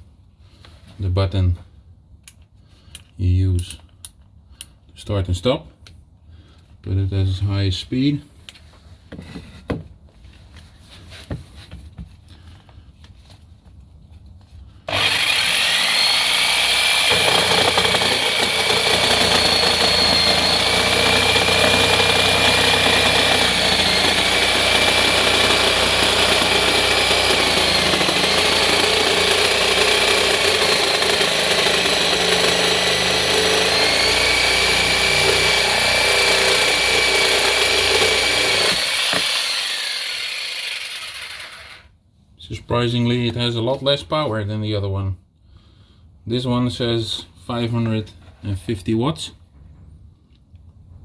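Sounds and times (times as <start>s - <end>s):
jigsaw motor whine: 14.9s - 41.9s.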